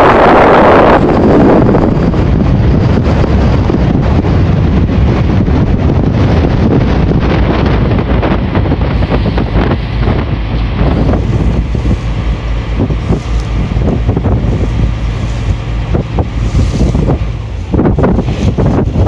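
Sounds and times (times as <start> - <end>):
wind buffeting microphone: 0.0 - 19.0.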